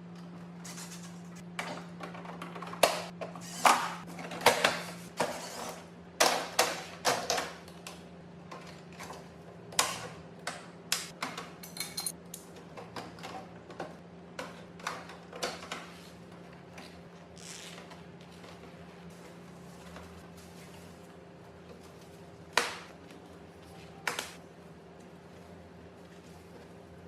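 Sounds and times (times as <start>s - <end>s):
tools and hardware clattering: 11.6s - 12.2s.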